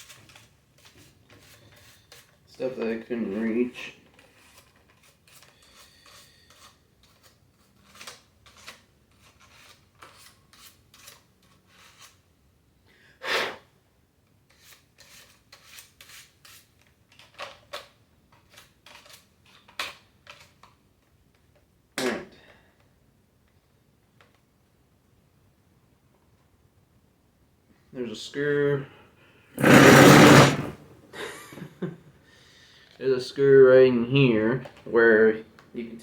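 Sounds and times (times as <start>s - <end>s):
loud bumps: 29.6s - 30.8s.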